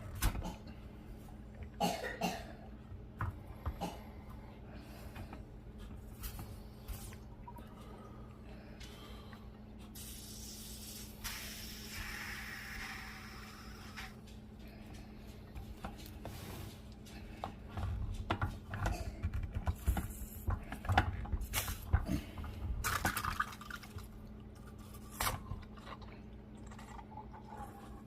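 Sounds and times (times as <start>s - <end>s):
liquid sounds: 6.0s - 16.6s, 20.6s - 28.0s.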